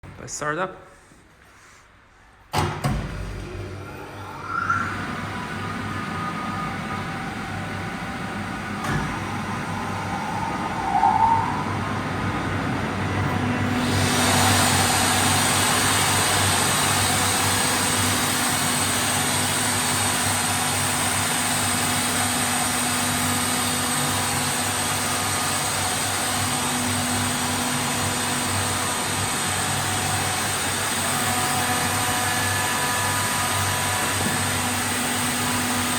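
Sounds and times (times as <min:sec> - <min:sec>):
compressor humming: 0:02.6 - 0:21.1.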